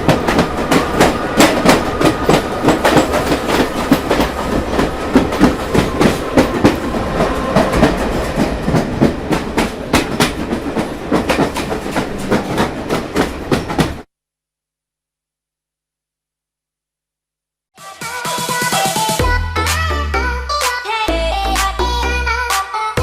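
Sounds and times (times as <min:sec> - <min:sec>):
train wheels clattering over rail joints: 0:00.0 - 0:14.0.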